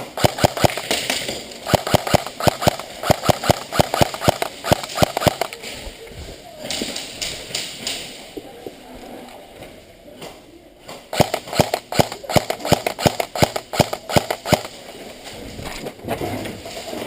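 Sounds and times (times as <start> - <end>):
airsoft rifle shots: 0.0 - 5.5, 11.1 - 14.8.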